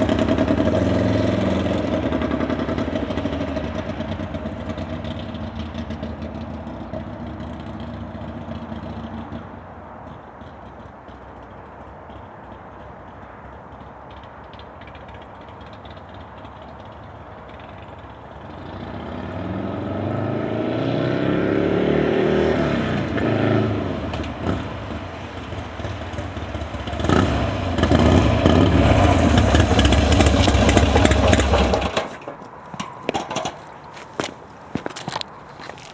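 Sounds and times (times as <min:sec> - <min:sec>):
motorcycle engine revving: 0:00.0 - 0:09.5, 0:13.8 - 0:32.3.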